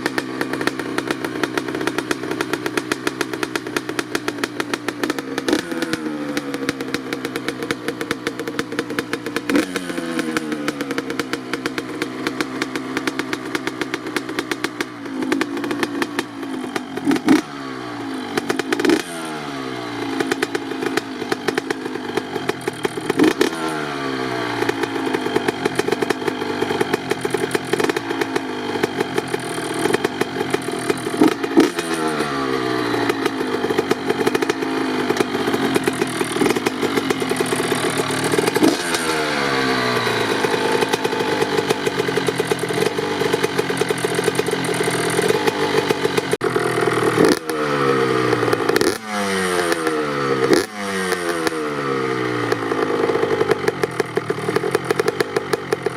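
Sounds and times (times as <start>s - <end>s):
two-stroke engine revving: 0.0s - 55.9s.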